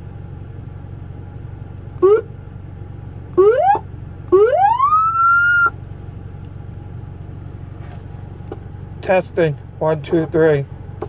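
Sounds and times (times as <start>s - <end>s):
steady low hum: 0.0s - 11.0s
police siren rising wail: 2.0s - 2.3s, 3.4s - 5.8s.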